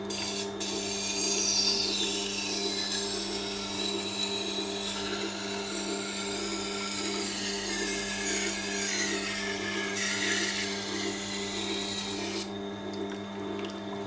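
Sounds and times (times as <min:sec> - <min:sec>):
motor hum: 0:00.0 - 0:14.0.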